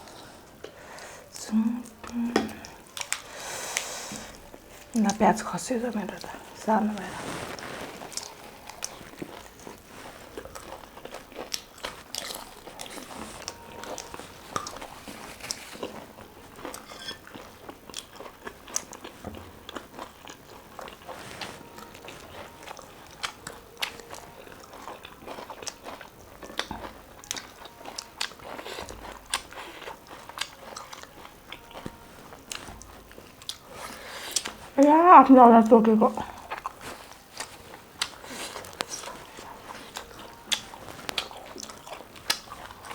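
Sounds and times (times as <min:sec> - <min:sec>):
wet chewing: 0:00.0 - 0:42.9
crisp crunching: 0:05.9 - 0:34.8, 0:36.2 - 0:42.9.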